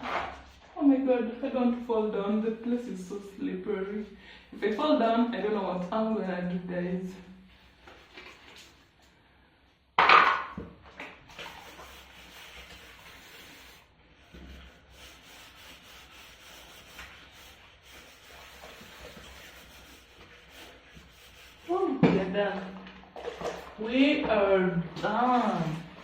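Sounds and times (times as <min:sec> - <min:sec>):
scrubbing and rubbing: 0:11.2 - 0:26.0.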